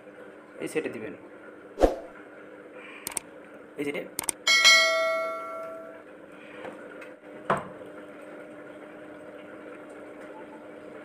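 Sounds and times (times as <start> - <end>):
metallic ring: 4.5 - 6.0.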